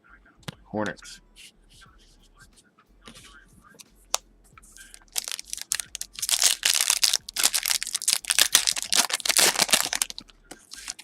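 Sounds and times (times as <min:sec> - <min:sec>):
plastic wrapper crinkling and tearing: 0:04.8 - 0:11.0.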